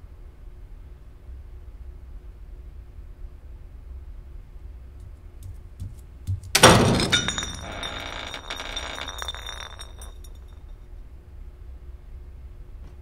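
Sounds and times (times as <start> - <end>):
glass breaking crash: 6.6 - 10.5
clinking glass debris: 6.6 - 10.6.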